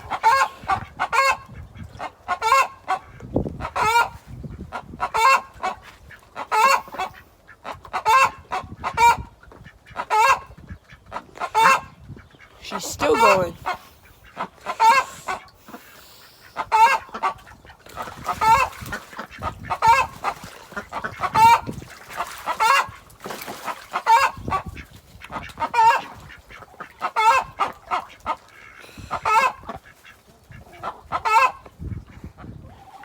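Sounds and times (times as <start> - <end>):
hen squawking: 12.6 - 15.5.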